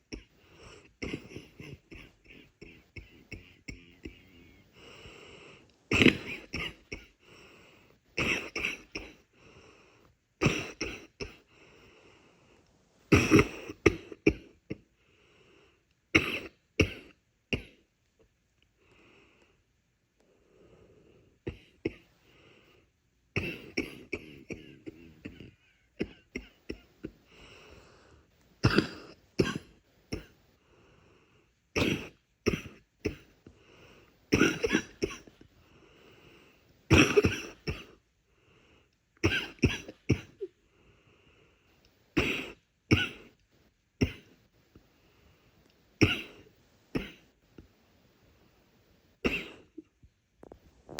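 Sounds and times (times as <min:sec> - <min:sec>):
person coughing chesty cough: 0:00.0 - 0:04.6, 0:05.9 - 0:07.2, 0:08.2 - 0:09.3, 0:10.4 - 0:11.5, 0:13.1 - 0:14.9, 0:16.2 - 0:17.8, 0:21.5 - 0:22.0, 0:23.4 - 0:27.2, 0:28.6 - 0:30.4, 0:31.8 - 0:33.3, 0:34.3 - 0:35.4, 0:36.9 - 0:38.0, 0:39.2 - 0:40.5, 0:42.2 - 0:43.3, 0:44.0 - 0:44.3, 0:46.0 - 0:47.2, 0:49.2 - 0:49.9.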